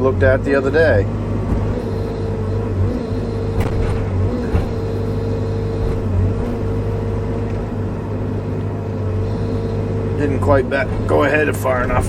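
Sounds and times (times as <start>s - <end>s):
excavator diesel engine running: 0.0s - 12.0s
hydraulic whine: 0.0s - 12.0s
sharp knocks: 3.5s - 5.0s.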